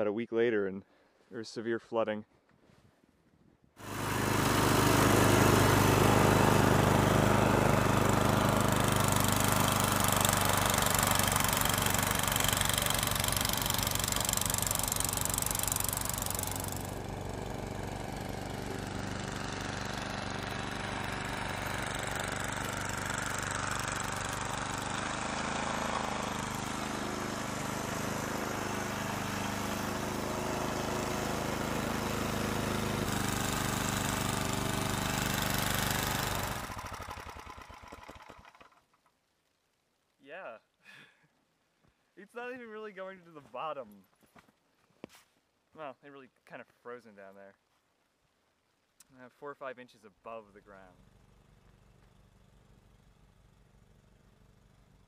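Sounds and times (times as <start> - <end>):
snowblower engine running: 3.8 - 39.1, 50.8 - 55.0.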